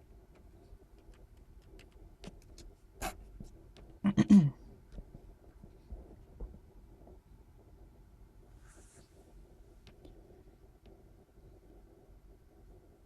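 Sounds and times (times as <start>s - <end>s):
person murmuring: 4.0s - 4.6s.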